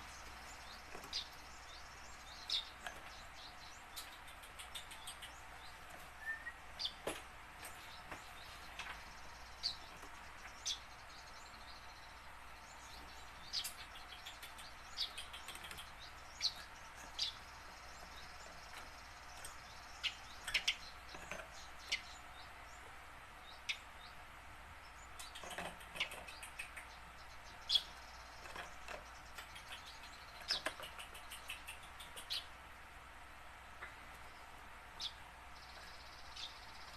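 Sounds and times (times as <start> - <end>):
sparrow chirping: 0.0 - 32.6, 33.8 - 36.9
faint steady hiss: 0.0 - 36.9.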